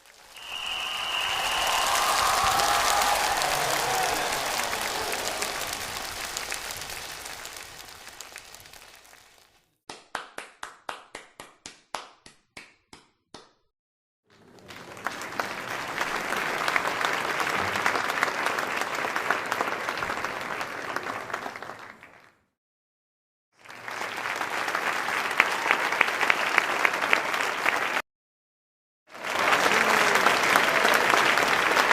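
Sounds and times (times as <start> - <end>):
applause: 0.0 - 13.5, 14.3 - 22.5, 23.6 - 28.0, 29.1 - 31.9
single hand claps: 0.4 - 7.6.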